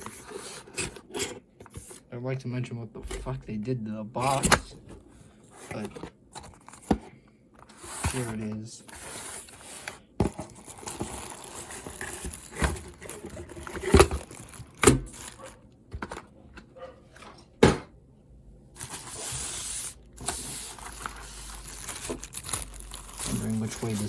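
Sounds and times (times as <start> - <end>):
packaging rustling: 7.6 - 16.3, 18.8 - 24.0.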